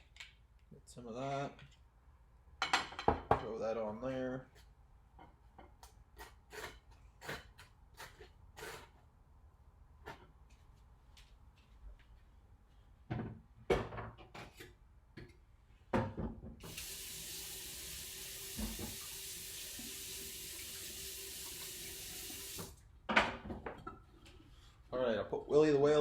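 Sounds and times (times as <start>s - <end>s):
kitchen tap running: 16.6s - 22.8s.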